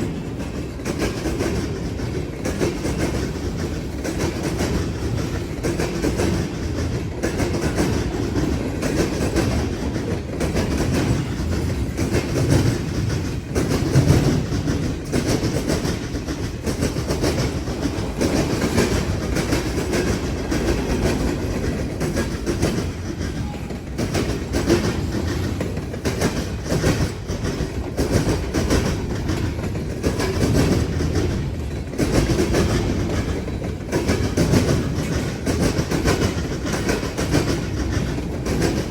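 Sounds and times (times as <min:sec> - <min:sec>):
low train rumble: 0:00.0 - 0:38.9
train wheels clattering over crossing: 0:00.0 - 0:38.9.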